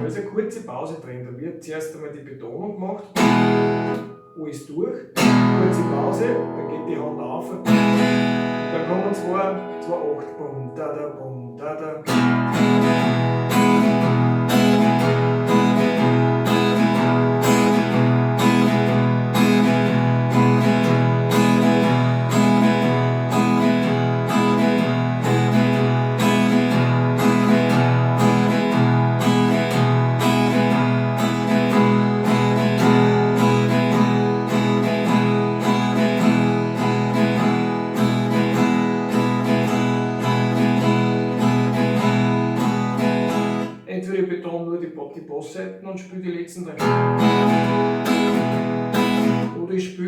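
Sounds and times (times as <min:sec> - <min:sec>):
acoustic guitar strumming: 0:00.0 - 0:00.8, 0:03.0 - 0:43.9, 0:46.7 - 0:49.7.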